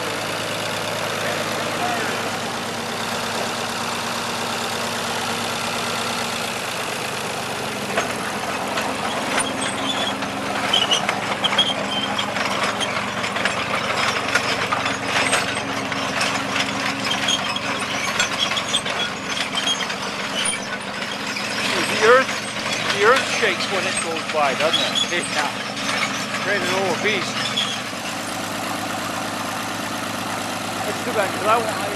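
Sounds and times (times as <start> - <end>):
heavy machine engine running: 0.0 - 31.9
clattering knocks and clanks: 7.8 - 28.3.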